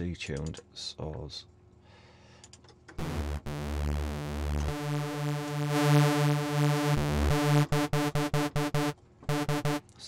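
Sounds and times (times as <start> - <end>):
detuned sawtooth synth notes: 3.0 - 9.8.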